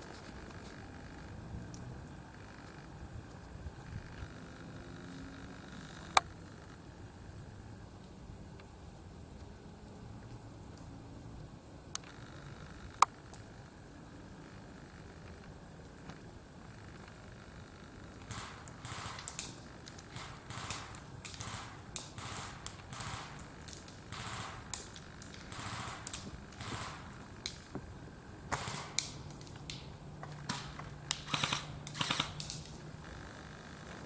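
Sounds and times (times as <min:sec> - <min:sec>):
airsoft guns firing: 0:18.2 - 0:27.7, 0:28.5 - 0:32.8.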